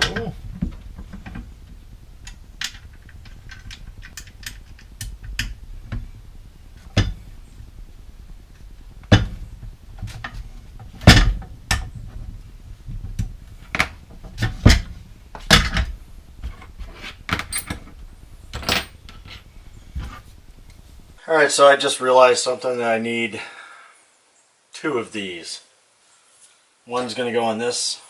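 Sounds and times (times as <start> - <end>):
bike rack parts knocking and clacking: 6.8 - 7.2, 9.0 - 12.2, 12.9 - 16.6.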